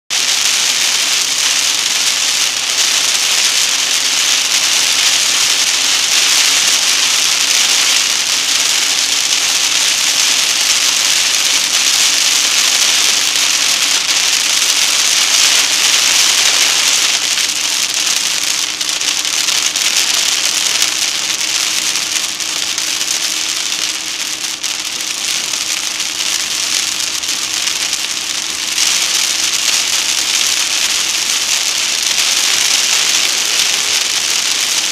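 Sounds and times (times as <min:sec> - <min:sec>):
rain hissing on a car: 0:00.1 - 0:34.9
wet tyre spray on road: 0:08.1 - 0:34.9.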